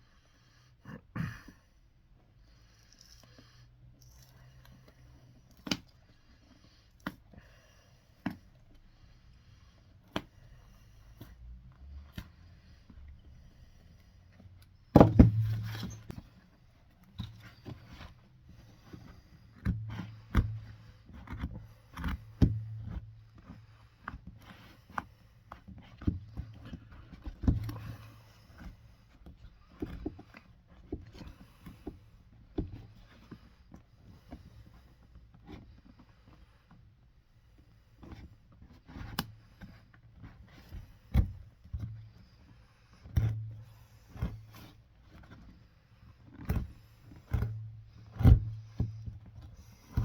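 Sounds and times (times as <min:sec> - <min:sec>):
hand tools knocking and scraping leather: 0:04.9 - 0:08.9, 0:09.8 - 0:37.0, 0:37.6 - 0:50.0.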